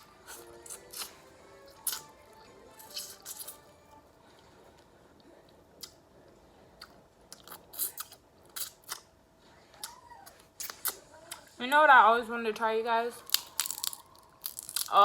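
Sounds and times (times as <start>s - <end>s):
chewing: 0.0s - 11.6s, 13.2s - 15.0s
crab shell cracking: 13.2s - 15.0s.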